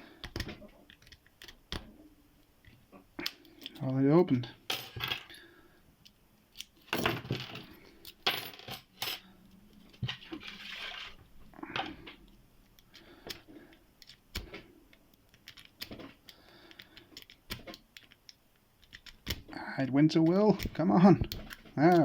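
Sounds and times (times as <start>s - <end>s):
padlocks and lock picks clinking: 15.2s - 16.1s.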